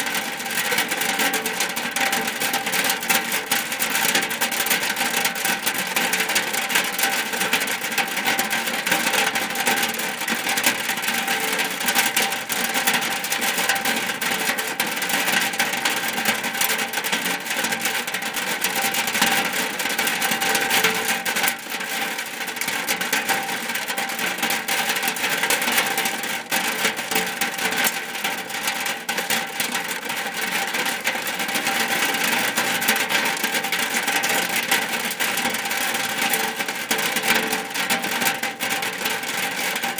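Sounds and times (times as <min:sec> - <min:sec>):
rain on a roof: 0:00.0 - 0:39.9.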